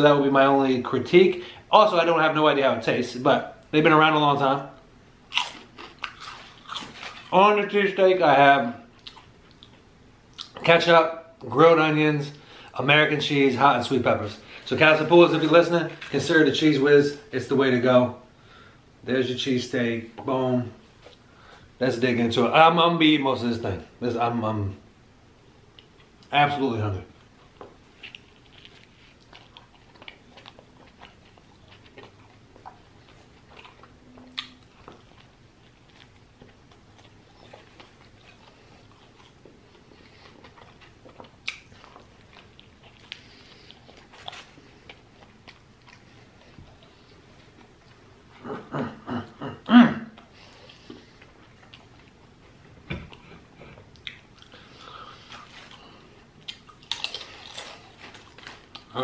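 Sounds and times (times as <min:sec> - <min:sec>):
person chewing food: 0:05.3 - 0:07.4, 0:09.0 - 0:10.6, 0:27.2 - 0:59.0.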